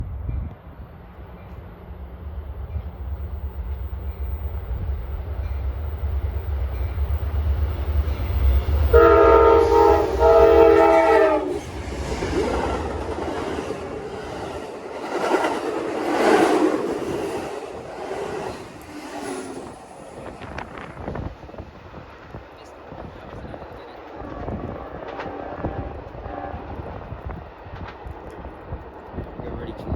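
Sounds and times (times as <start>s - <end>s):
diesel locomotive rumbling: 0.0s - 29.9s
train horn blasts: 8.1s - 14.0s, 24.2s - 27.2s
train wheels clickety-clack: 9.8s - 29.9s.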